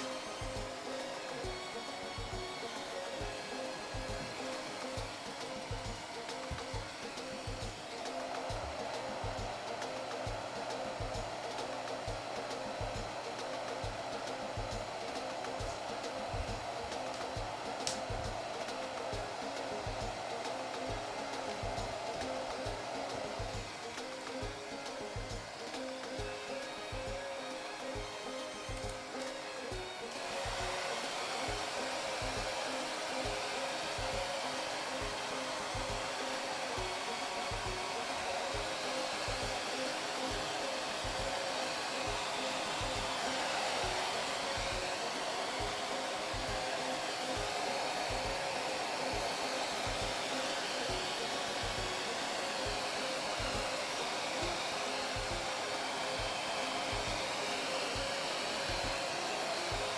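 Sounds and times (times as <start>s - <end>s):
hair dryer blowing: 0.0s - 59.9s.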